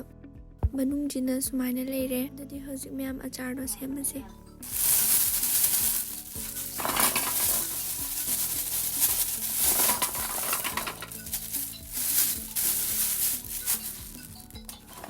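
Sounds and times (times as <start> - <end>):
utensils stirring and scraping in pot: 4.6 - 15.0.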